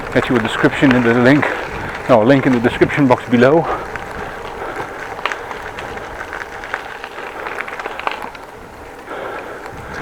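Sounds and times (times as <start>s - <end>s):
bicycle tyre and road noise: 0.0s - 10.0s
small clicks and rattles: 0.0s - 10.0s.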